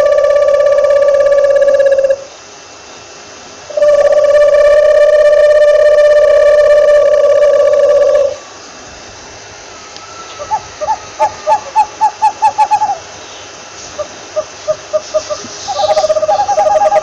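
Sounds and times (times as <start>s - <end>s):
owl hooting: 0.0s - 2.3s, 3.7s - 8.6s, 9.7s - 17.0s
faint background hiss: 0.0s - 17.0s
steady tone: 3.7s - 8.4s.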